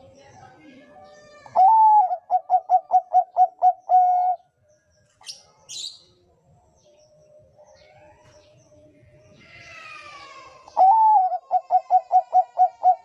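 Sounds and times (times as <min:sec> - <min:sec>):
dove cooing: 0:01.6 - 0:04.4, 0:10.7 - 0:13.0.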